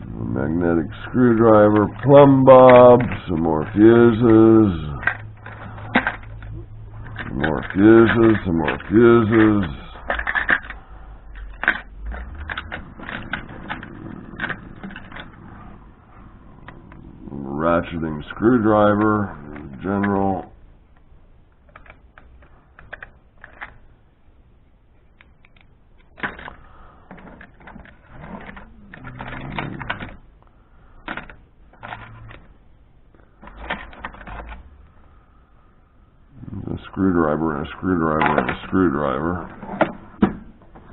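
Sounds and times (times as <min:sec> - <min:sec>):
small tools clicking and rattling: 0:01.0 - 0:15.5.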